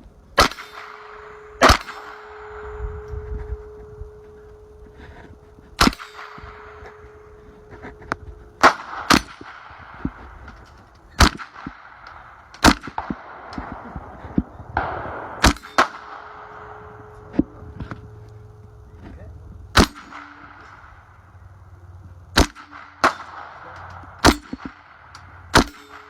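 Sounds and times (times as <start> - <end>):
rifle shots cracking: 0.4 - 4.7, 5.8 - 17.2, 19.7 - 21.0, 22.3 - 26.0
ringing echo: 0.4 - 26.0.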